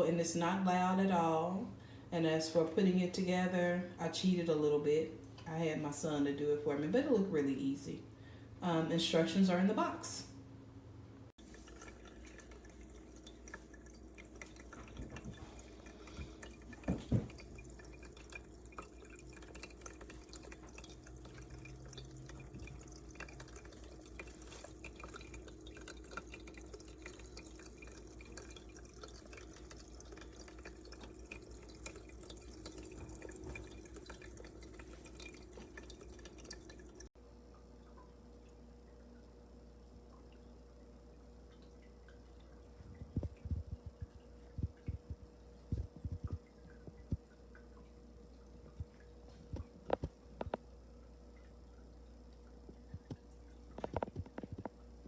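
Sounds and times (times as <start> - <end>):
fountain water trickling: 11.4 - 39.3.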